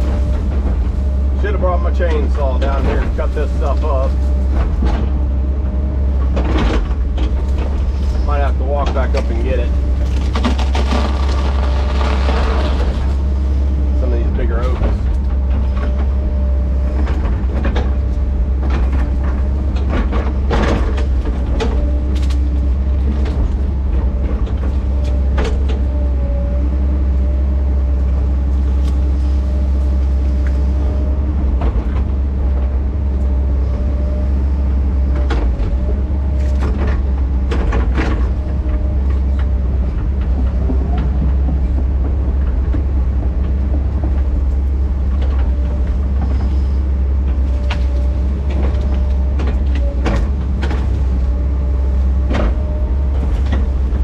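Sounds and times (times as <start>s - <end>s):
diesel engine under load: 0.0s - 54.0s.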